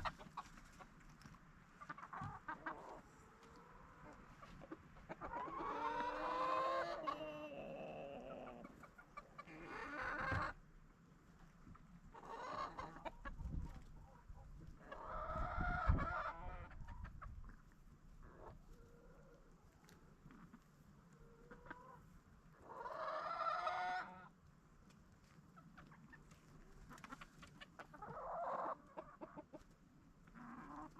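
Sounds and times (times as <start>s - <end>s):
chickens clucking: 0.0s - 30.9s.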